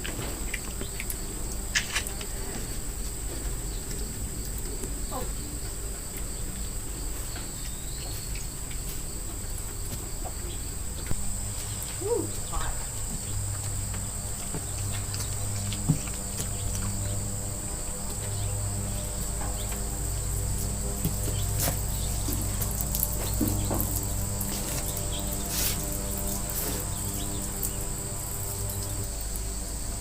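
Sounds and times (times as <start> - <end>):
insects droning: 0.0 - 30.0
low steady hum: 0.0 - 30.0
faint short calls: 11.9 - 12.9.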